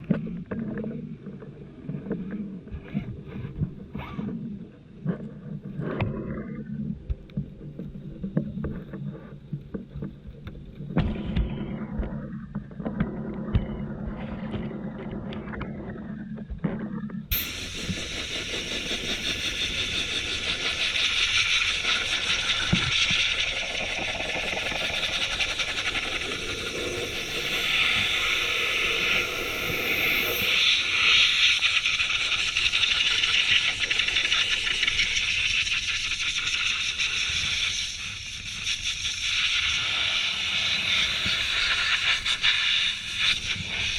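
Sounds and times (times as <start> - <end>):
rc car low rumble: 0.0 - 43.9
rc car motor high whine: 17.5 - 35.2.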